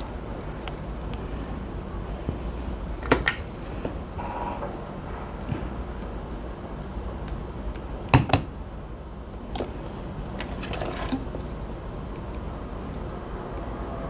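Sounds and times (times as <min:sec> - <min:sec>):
small hard parts clicking: 0:09.5 - 0:11.5.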